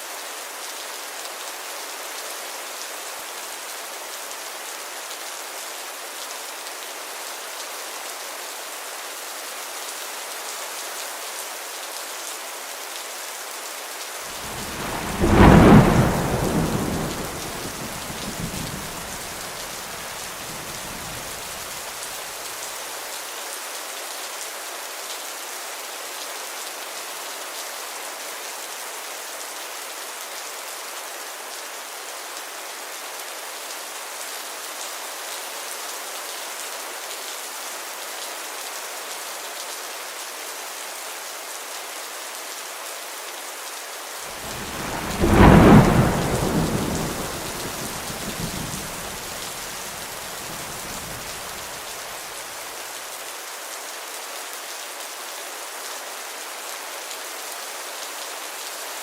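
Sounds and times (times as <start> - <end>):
heavy rain: 0.0 - 59.0
thunder clap and rumble: 14.4 - 21.6, 44.4 - 51.8.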